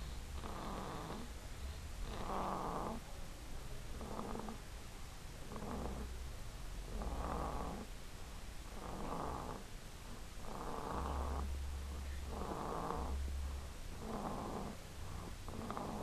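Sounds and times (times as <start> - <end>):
baby snoring: 0.0 - 1.3, 2.0 - 3.0, 3.9 - 4.6, 5.5 - 6.1, 6.9 - 7.9, 8.7 - 9.7, 10.4 - 13.2, 14.0 - 16.0.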